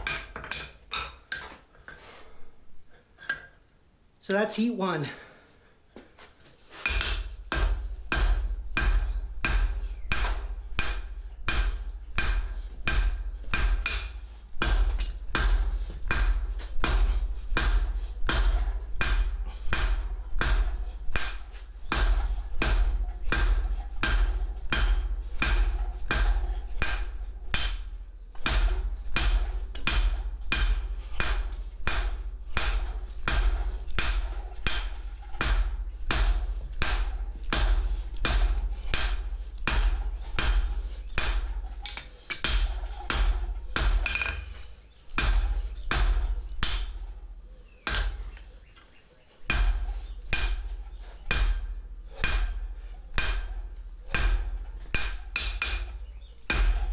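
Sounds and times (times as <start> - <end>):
hammer ringing on anvil: 53.2 - 55.9.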